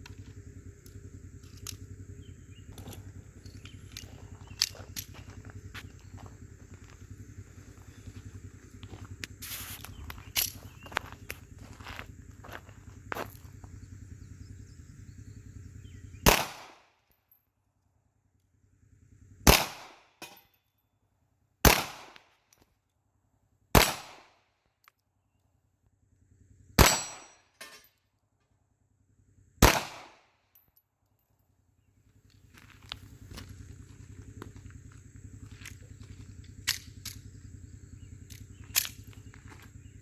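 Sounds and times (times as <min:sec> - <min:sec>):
pistol shots: 0:16.2 - 0:16.9, 0:19.4 - 0:20.4, 0:21.6 - 0:22.3, 0:23.7 - 0:24.4, 0:26.8 - 0:27.5, 0:29.6 - 0:30.3.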